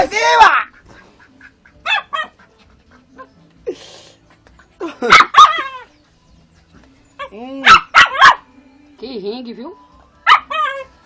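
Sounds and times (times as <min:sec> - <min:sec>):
dog yipping: 0:00.2 - 0:00.9, 0:01.8 - 0:02.5, 0:05.0 - 0:06.0, 0:07.2 - 0:08.5, 0:10.2 - 0:11.0.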